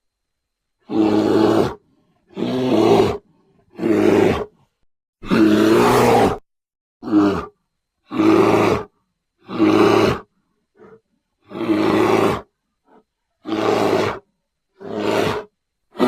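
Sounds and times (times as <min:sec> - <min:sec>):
loud animal calls: 0:05.2 - 0:06.4.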